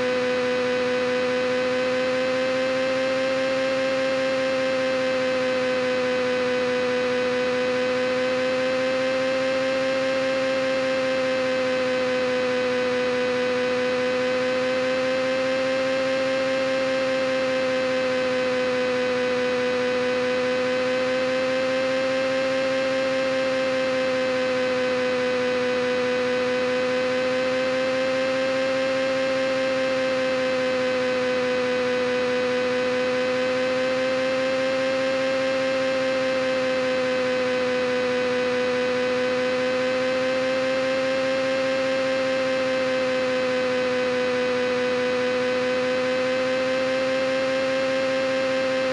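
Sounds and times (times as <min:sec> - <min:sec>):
humming drone: 0:00.0 - 0:48.9.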